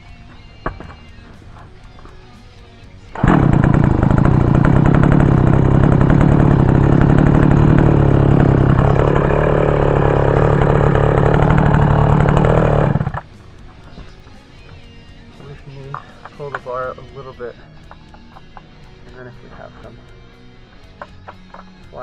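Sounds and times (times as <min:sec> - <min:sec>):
chainsaw engine running: 0:03.0 - 0:13.7.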